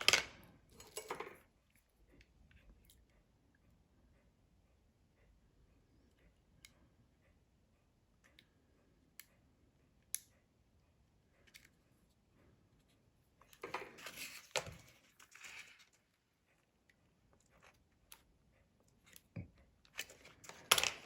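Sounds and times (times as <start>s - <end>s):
scraping and rustling: 13.6s - 16.0s.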